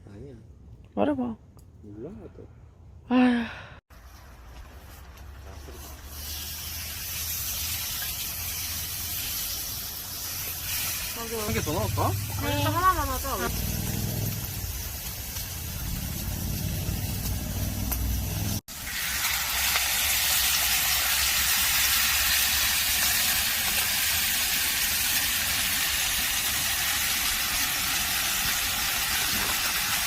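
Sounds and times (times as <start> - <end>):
food sizzling on a grill: 4.0 - 30.0
low rumble: 11.1 - 18.6.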